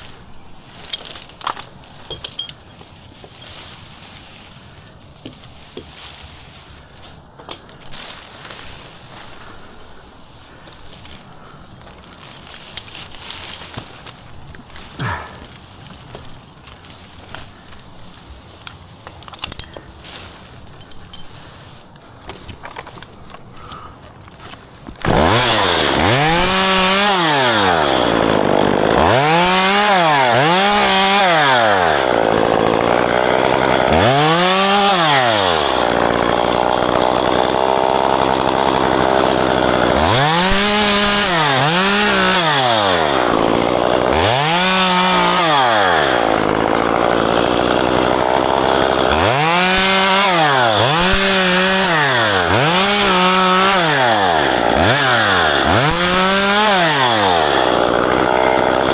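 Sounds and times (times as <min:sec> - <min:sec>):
chainsaw revving: 0:14.8 - 0:15.6, 0:25.0 - 0:58.9.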